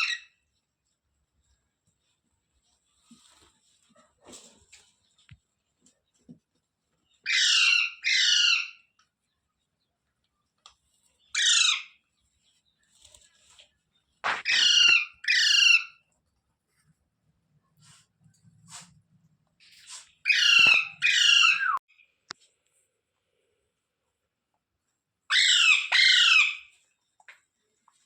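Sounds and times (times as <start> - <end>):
parrot squawking: 7.3 - 8.8, 11.4 - 12.0, 14.3 - 15.9, 20.3 - 21.8, 25.3 - 26.7.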